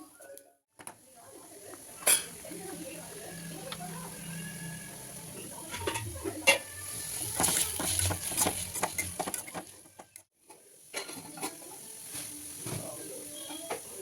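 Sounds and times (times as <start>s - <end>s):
metal utensil scraping a pan: 3.3s - 9.8s.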